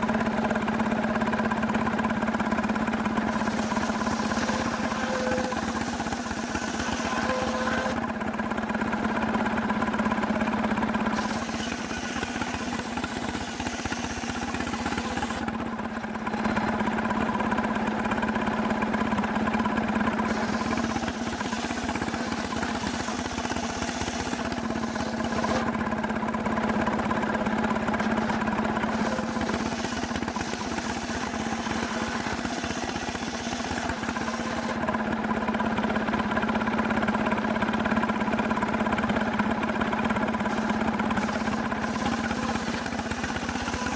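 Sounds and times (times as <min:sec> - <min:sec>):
chainsaw engine running: 0:00.0 - 0:43.9
chainsaw cutting hiss: 0:03.3 - 0:07.9, 0:11.2 - 0:15.4, 0:20.3 - 0:25.6, 0:28.9 - 0:34.8, 0:40.5 - 0:43.9.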